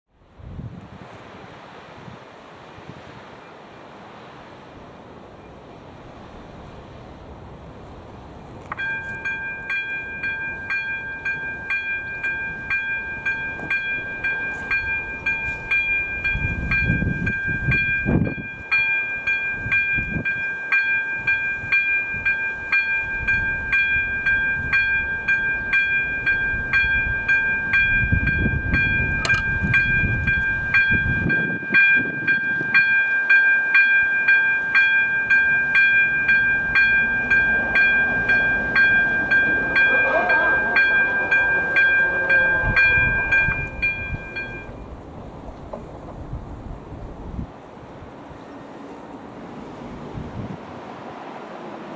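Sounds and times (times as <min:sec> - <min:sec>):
railroad crossing bell ringing: 0:08.7 - 0:45.0.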